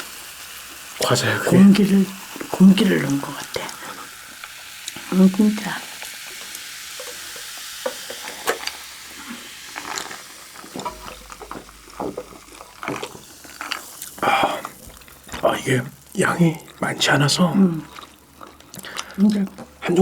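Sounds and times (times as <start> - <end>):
crunching and chewing crispy food: 5.9 - 19.8.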